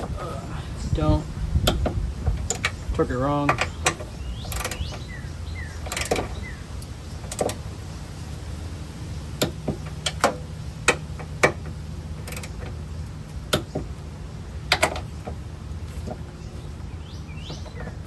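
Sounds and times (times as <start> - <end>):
torque wrench clicking: 1.6 - 5.2, 5.8 - 7.6, 12.2 - 12.7.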